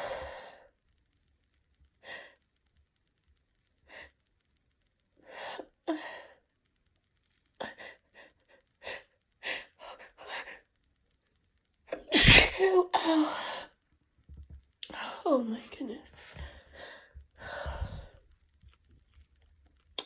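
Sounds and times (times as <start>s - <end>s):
woman sneezing loudly: 12.1s - 12.8s.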